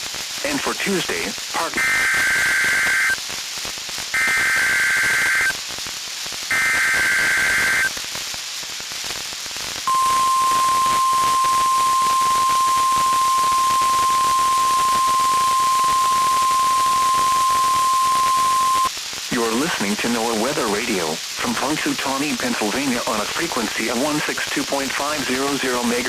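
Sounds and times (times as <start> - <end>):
radio static hiss: 0.0 - 8.4, 9.1 - 26.0
steady alarm tone: 1.8 - 3.2, 4.2 - 5.5, 6.5 - 7.9, 9.9 - 18.9
warbling data bursts: 4.2 - 5.6, 6.5 - 7.9, 9.9 - 18.9.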